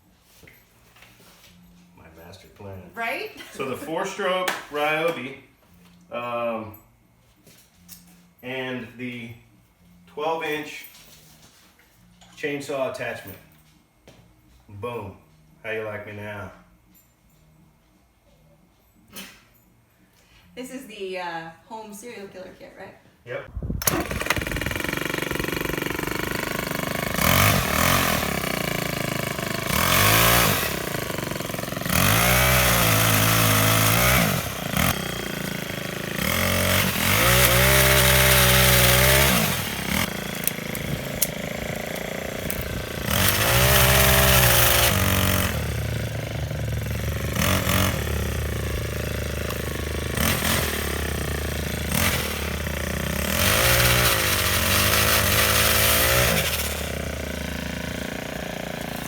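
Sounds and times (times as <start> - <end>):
small engine idling and revving: 23.8 - 59.0.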